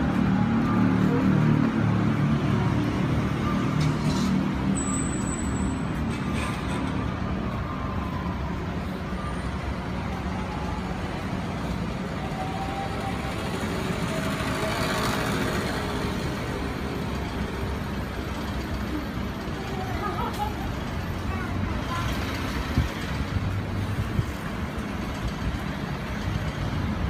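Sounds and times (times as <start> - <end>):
city street traffic noise: 0.0 - 27.0.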